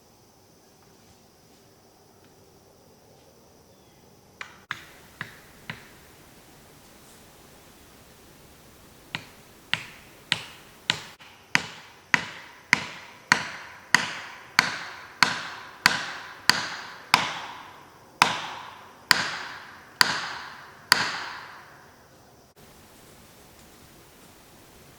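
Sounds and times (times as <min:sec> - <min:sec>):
hammer blows on wedge: 0:09.1 - 0:21.6.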